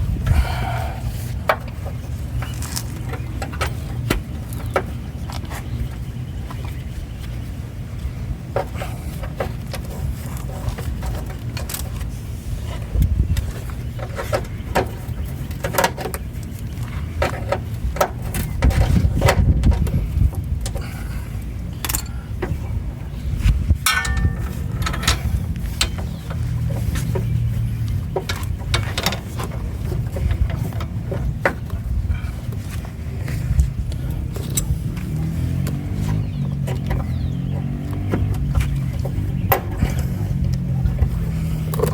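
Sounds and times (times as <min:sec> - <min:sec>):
hand tools clicking and knocking: 0:13.4 - 0:21.1, 0:23.8 - 0:41.9
metallic ring: 0:23.9 - 0:25.2.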